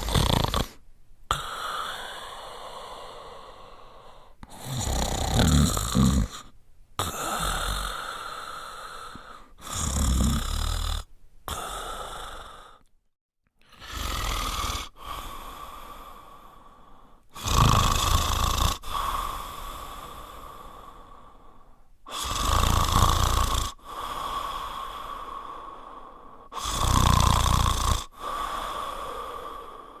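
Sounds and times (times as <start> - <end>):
dog snoring: 0.0 - 2.1, 4.4 - 8.1, 9.1 - 12.8, 13.7 - 15.4, 17.3 - 19.3, 22.1 - 24.1, 26.6 - 28.4.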